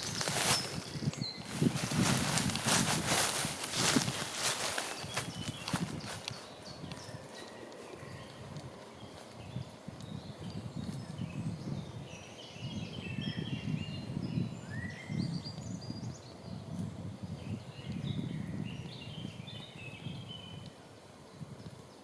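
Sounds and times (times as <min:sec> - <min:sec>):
footsteps on forest floor: 0:00.0 - 0:07.1
songbirds chirping and trilling: 0:00.0 - 0:22.0.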